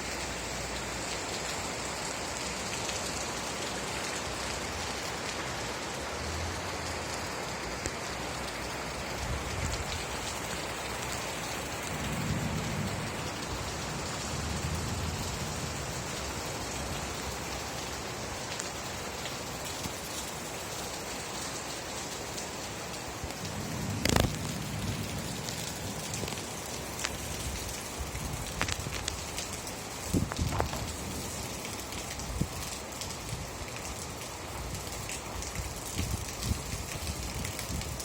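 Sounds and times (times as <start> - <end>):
rain falling: 0.0 - 38.0
low rumbles: 11.1 - 17.6, 23.3 - 27.0.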